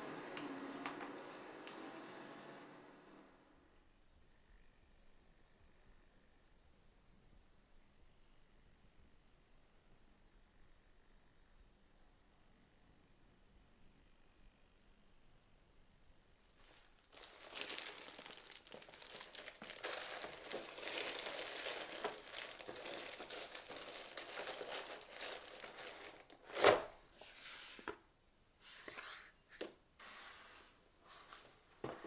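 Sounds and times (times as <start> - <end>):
soft rustles: 16.5 - 26.4
packaging crinkling: 16.5 - 26.9.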